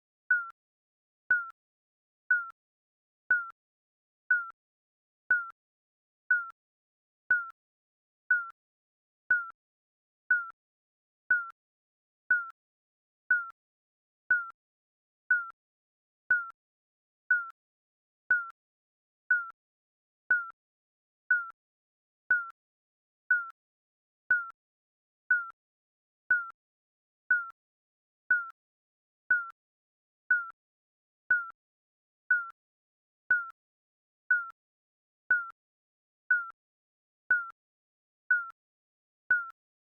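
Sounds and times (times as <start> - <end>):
timer beeps: 0.3 - 0.6, 1.3 - 1.6, 2.3 - 2.6, 3.3 - 3.6, 4.3 - 4.6, 5.3 - 5.6, 6.3 - 6.6, 7.3 - 7.6, 8.3 - 8.6, 9.3 - 9.6, 10.3 - 10.6, 11.3 - 11.6, 12.3 - 12.6, 13.3 - 13.6, 14.3 - 14.6, 15.3 - 15.6, 16.3 - 16.6, 17.3 - 17.6, 18.3 - 18.6, 19.3 - 19.6, 20.3 - 20.6, 21.3 - 21.6, 22.3 - 22.6, 23.3 - 23.6, 24.3 - 24.6, 25.3 - 25.6, 26.3 - 26.6, 27.3 - 27.6, 28.3 - 28.6, 29.3 - 29.6, 30.3 - 30.6, 31.3 - 31.6, 32.3 - 32.6, 33.3 - 33.6, 34.3 - 34.6, 35.3 - 35.6, 36.3 - 36.6, 37.3 - 37.6, 38.3 - 38.6, 39.3 - 39.6.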